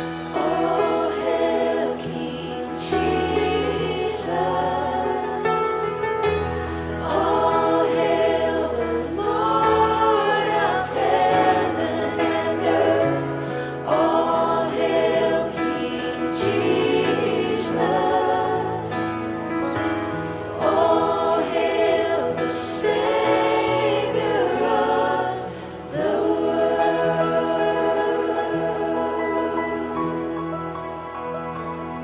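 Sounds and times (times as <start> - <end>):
choir singing gospel song: 0.0 - 32.0.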